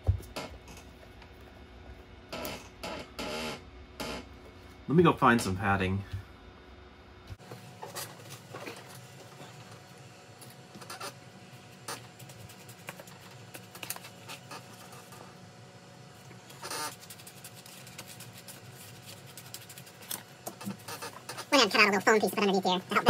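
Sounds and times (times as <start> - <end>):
steady low hum: 0.0 - 23.0
scratches and clicks of handling: 16.4 - 21.5.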